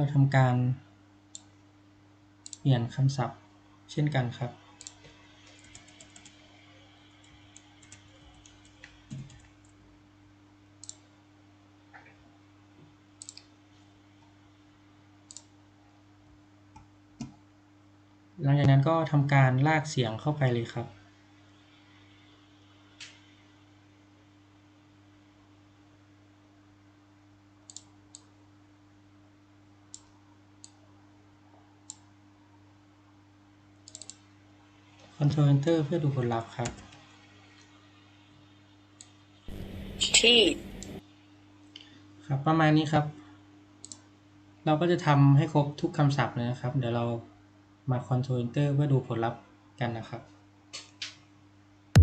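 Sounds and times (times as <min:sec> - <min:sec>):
faint electrical hum: 0:00.0 - 0:52.0
computer mouse clicking: 0:02.4 - 0:02.6, 0:04.8 - 0:06.4, 0:07.2 - 0:09.8, 0:10.8 - 0:11.0, 0:13.2 - 0:13.5, 0:15.3 - 0:15.5, 0:27.7 - 0:28.3, 0:29.9 - 0:30.8, 0:33.8 - 0:34.2, 0:43.8 - 0:44.1
mouse and keyboard clicks: 0:13.2 - 0:13.5.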